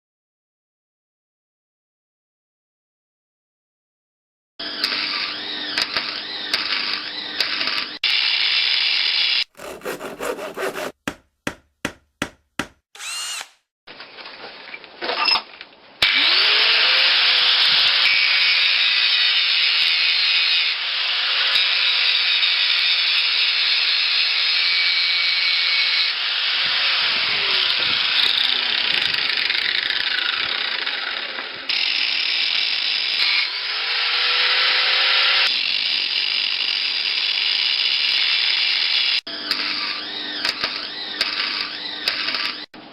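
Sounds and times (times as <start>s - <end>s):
electric power tool motor: 4.6s - 11.0s, 13.0s - 13.6s, 16.0s - 42.7s.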